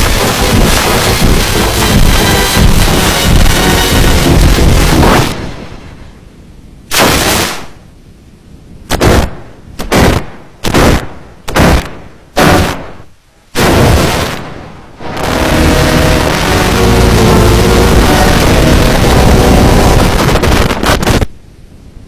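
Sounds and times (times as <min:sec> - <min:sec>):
distorted noise blasts: 0:00.0 - 0:07.9, 0:08.8 - 0:21.9
dense wash of noise: 0:00.0 - 0:10.2, 0:12.4 - 0:22.0.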